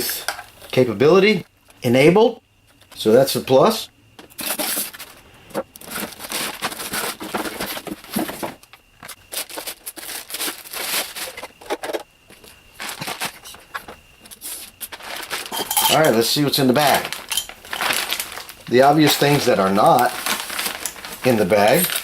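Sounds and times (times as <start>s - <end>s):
plastic and paper crinkling: 4.4s - 22.0s.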